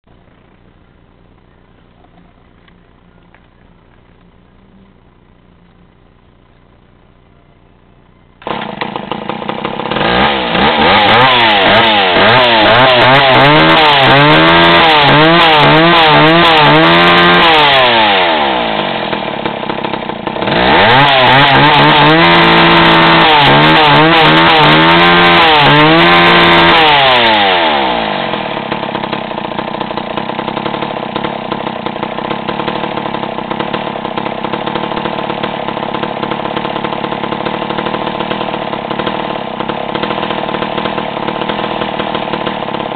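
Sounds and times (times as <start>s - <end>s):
chainsaw revving and idling: 8.4s - 42.9s.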